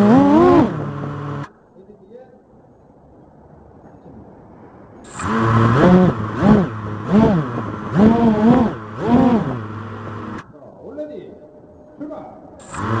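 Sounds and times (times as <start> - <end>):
drone motors whining: 0.0 - 1.5, 5.1 - 10.5, 12.5 - 13.0.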